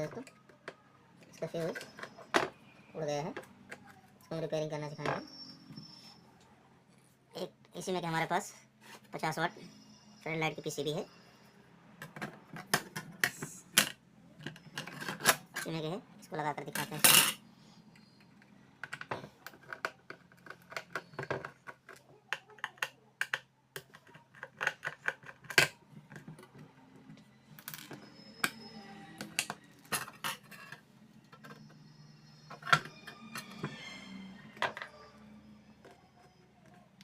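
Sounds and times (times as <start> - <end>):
hands tapping and clicking parts: 12.0 - 15.7, 16.8 - 31.8.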